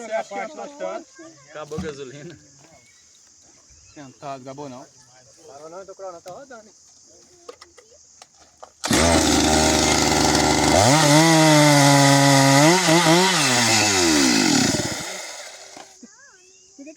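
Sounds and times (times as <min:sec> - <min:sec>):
chainsaw running at high revs: 0:08.8 - 0:16.0.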